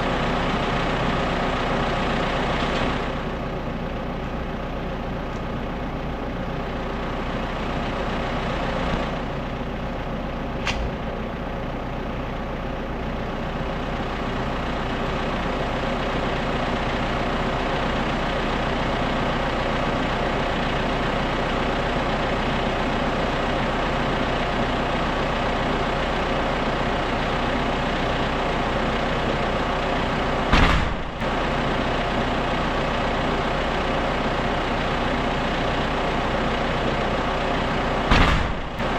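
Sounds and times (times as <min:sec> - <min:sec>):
tractor diesel engine idling: 0:00.0 - 0:38.9
sharp click: 0:10.6 - 0:10.9
short thump: 0:30.5 - 0:31.2, 0:38.1 - 0:38.8.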